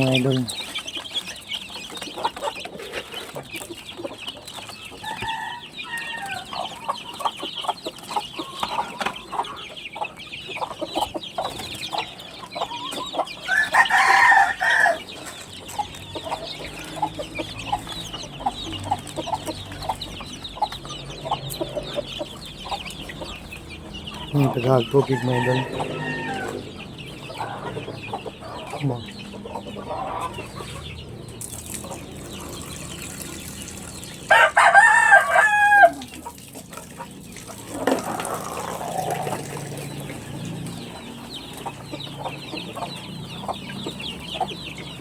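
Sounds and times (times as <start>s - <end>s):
chickens clucking: 0.0s - 45.0s
rooster crowing: 5.0s - 6.6s, 13.5s - 15.1s, 25.1s - 26.7s, 34.3s - 36.2s.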